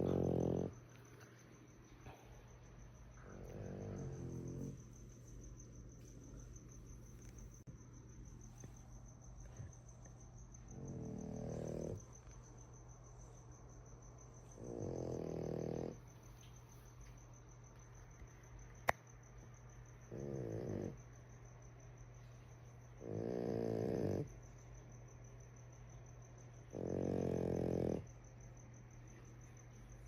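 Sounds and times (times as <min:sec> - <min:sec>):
dog snoring: 0:00.0 - 0:00.9, 0:03.2 - 0:04.9, 0:10.6 - 0:12.0, 0:14.4 - 0:16.1, 0:20.1 - 0:21.0, 0:23.0 - 0:24.4, 0:26.7 - 0:28.2.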